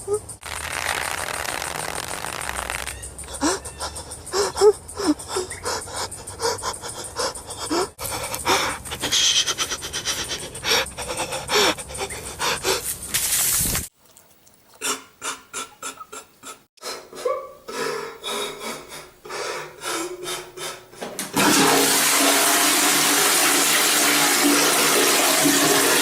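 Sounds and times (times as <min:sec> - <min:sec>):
sobbing gasps and whimpers: 0:03.3 - 0:12.9, 0:14.8 - 0:21.0.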